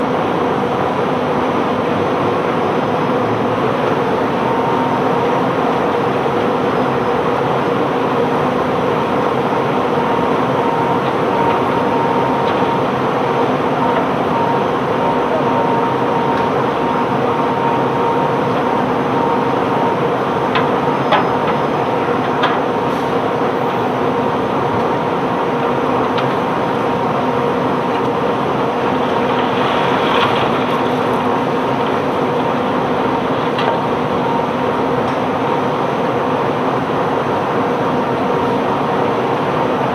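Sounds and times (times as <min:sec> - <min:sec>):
heavy machinery droning hum: 0:00.0 - 0:39.9.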